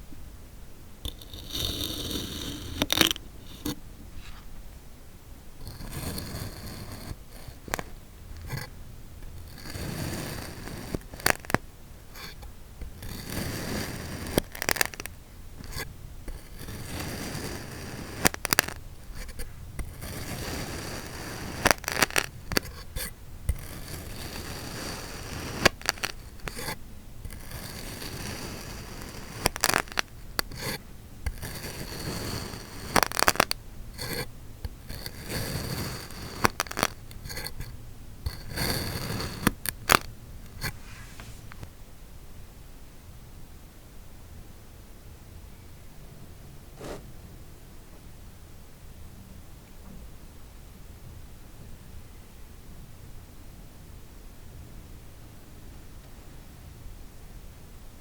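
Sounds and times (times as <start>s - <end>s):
sand scraping: 5.6s - 11.6s, 12.2s - 41.7s.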